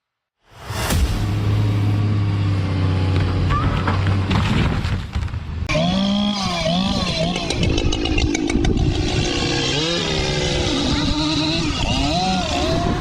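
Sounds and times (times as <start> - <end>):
chainsaw revving: 5.7 - 13.0.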